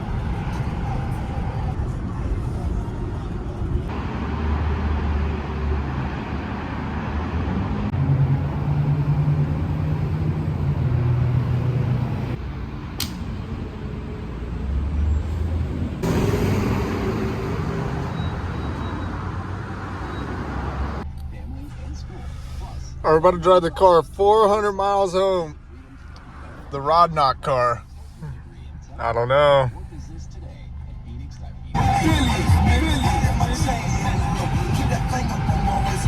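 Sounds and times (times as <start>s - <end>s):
deep engine drone: 0.0s - 36.0s
road noise: 0.0s - 36.0s
sharp click: 13.0s - 13.3s
car engine running: 18.1s - 36.0s.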